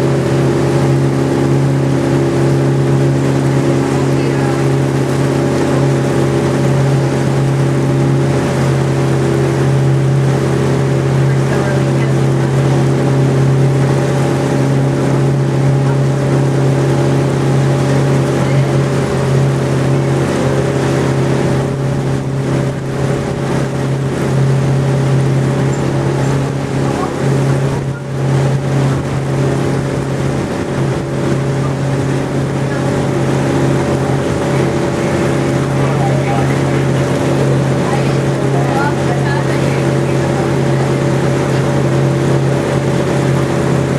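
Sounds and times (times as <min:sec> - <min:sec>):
boat engine humming: 0:00.0 - 0:43.9
rushing water: 0:00.0 - 0:43.9
wind noise: 0:12.9 - 0:38.5.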